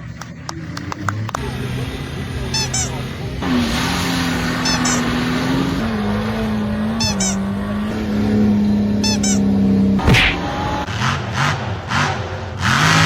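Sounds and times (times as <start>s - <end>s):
off-road vehicle engine revving: 0.0s - 13.0s
short high squeaks: 2.6s - 3.0s, 4.5s - 5.2s, 7.0s - 7.5s, 9.0s - 10.4s
sharp knock: 10.0s - 10.4s.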